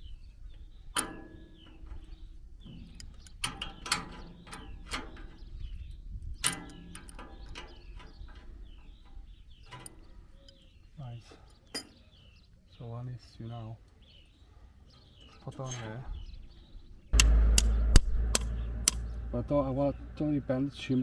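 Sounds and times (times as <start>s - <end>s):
birds chirping: 0.0s - 21.0s
metal parts clicking and knocking: 0.9s - 5.6s, 6.2s - 10.8s.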